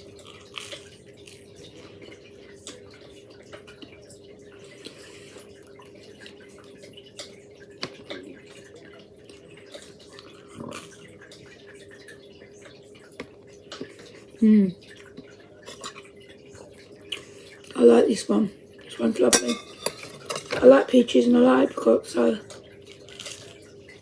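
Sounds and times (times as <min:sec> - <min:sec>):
person eating toast: 0:00.2 - 0:02.8.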